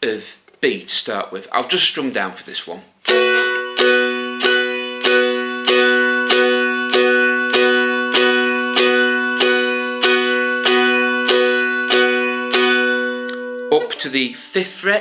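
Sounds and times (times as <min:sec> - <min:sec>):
mountain dulcimer strums: 0:03.0 - 0:15.0.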